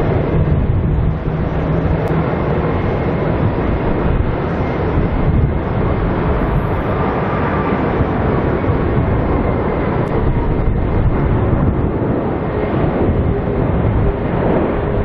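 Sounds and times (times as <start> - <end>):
jet engines roaring: 0.0 - 15.0.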